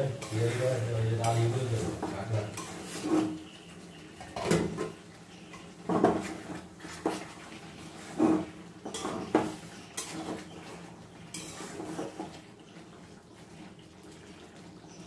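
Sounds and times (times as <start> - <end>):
metal utensil clinking on cookware: 0.0 - 3.4, 8.8 - 10.5, 11.3 - 12.2.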